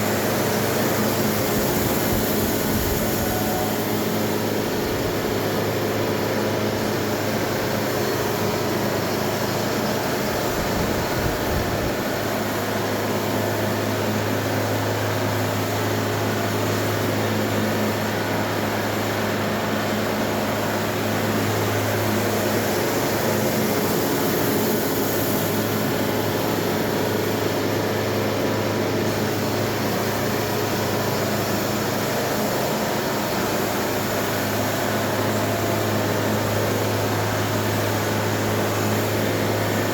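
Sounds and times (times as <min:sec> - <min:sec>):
motor humming steadily: 0:00.0 - 0:39.9.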